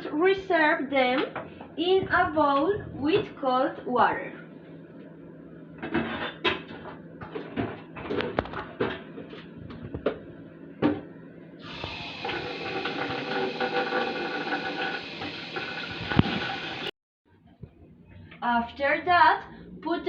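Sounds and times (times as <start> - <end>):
tap water rushing: 11.6 - 16.9.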